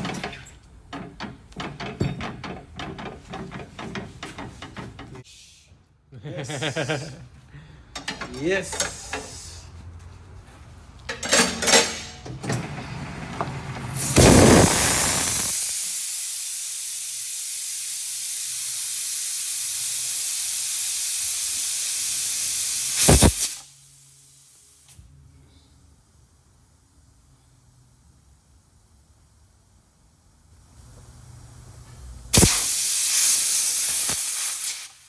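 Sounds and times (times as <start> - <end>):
compressed air blast and hiss: 5.2 - 5.7, 14.0 - 25.0, 32.3 - 35.0.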